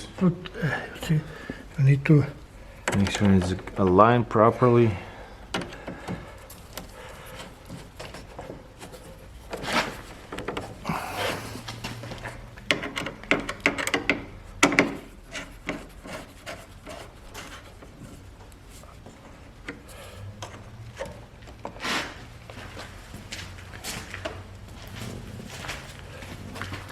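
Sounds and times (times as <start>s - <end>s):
hard plastic scraping and knocking: 2.8s - 4.0s, 5.5s - 21.8s.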